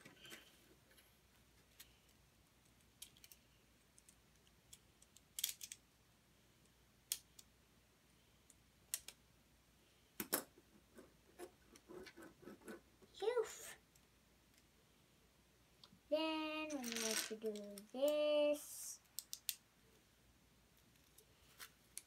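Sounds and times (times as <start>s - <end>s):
plastic pieces clicking and snapping: 1.6s - 5.8s, 7.1s - 7.5s, 8.5s - 9.2s, 19.0s - 19.6s.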